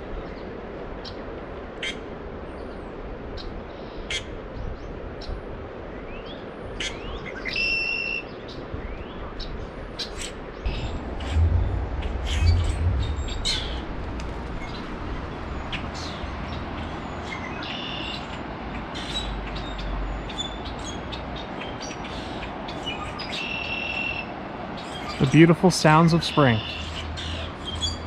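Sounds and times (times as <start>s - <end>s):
steady rushing background: 10.7s - 15.3s
low rumbles: 10.7s - 16.0s.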